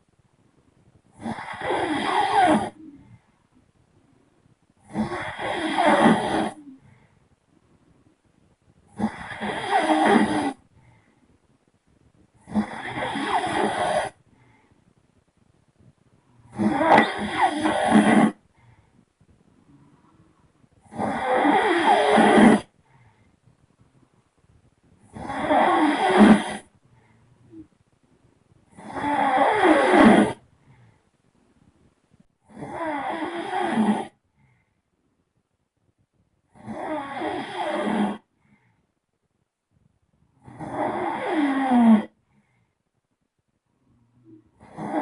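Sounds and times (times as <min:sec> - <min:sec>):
person snoring: 0:01.1 - 0:03.1, 0:04.8 - 0:06.8, 0:08.9 - 0:10.6, 0:12.4 - 0:14.2, 0:16.5 - 0:18.4, 0:20.8 - 0:22.7, 0:25.1 - 0:26.7, 0:28.7 - 0:30.4, 0:32.5 - 0:34.2, 0:36.5 - 0:38.3, 0:40.4 - 0:42.2, 0:44.2 - 0:45.0.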